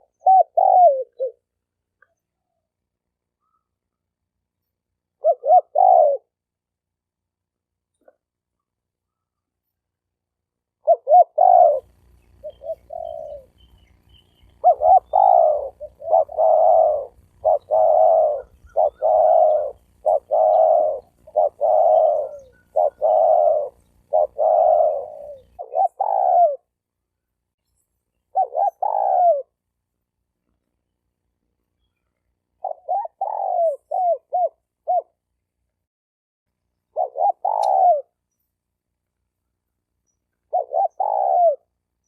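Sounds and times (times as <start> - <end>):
dove cooing: 0.0 - 1.5, 5.2 - 6.4, 10.8 - 26.8, 28.3 - 29.6, 32.6 - 35.2, 36.9 - 38.2, 40.5 - 41.8.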